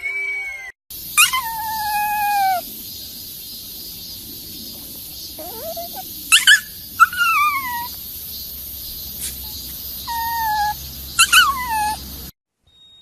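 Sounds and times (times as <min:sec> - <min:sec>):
young animal whining cries: 0:01.2 - 0:02.8, 0:04.8 - 0:08.3, 0:09.2 - 0:12.2.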